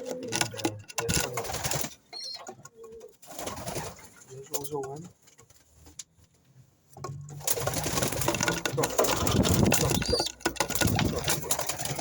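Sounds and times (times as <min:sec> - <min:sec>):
clicks and knocks: 0:00.0 - 0:01.9, 0:07.0 - 0:12.0
pigeons cooing: 0:00.0 - 0:04.0, 0:07.5 - 0:12.0
loud close rustling: 0:07.4 - 0:12.0.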